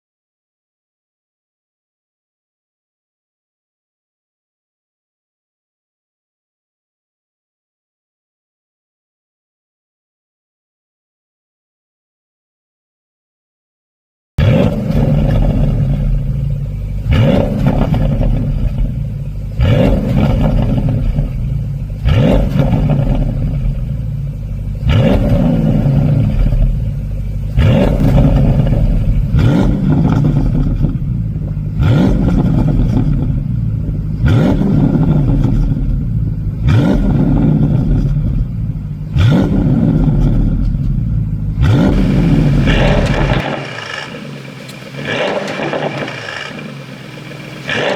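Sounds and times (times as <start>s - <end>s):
car engine revving: 14.4s - 23.7s, 24.8s - 30.9s, 41.6s - 47.9s
exhaust pops and crackles: 27.6s - 31.2s, 41.9s - 47.9s.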